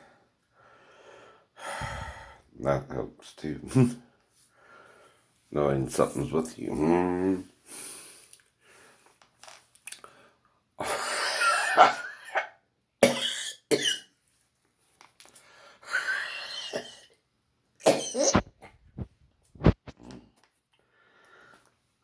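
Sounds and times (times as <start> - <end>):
man coughing: 10.8 - 14.0, 16.5 - 17.1, 17.8 - 18.4.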